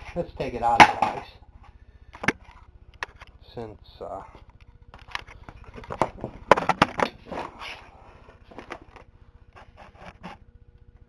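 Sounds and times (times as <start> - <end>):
metal casing smashed: 0.6 - 1.3.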